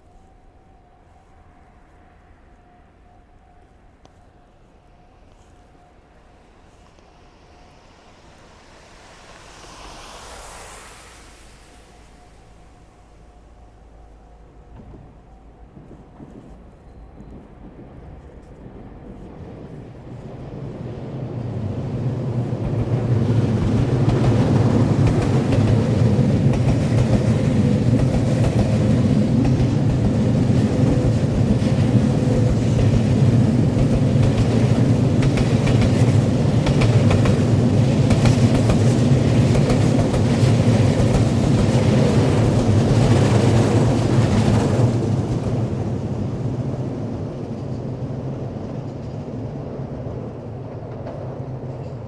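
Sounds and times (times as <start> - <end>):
electric freight train passing: 0.0 - 52.0
wheel clacks over rail joints: 23.5 - 45.5.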